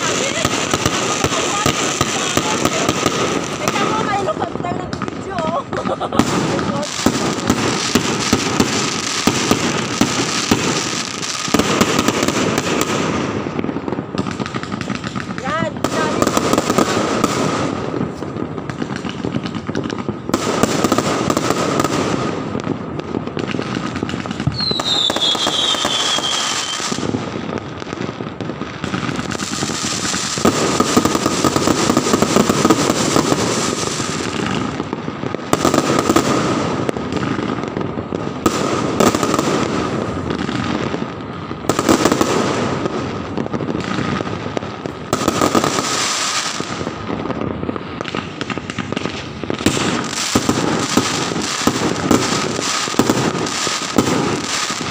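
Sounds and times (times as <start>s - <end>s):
fireworks and firecrackers crackling: 0.0s - 54.9s
falling firework whistle: 24.5s - 27.0s.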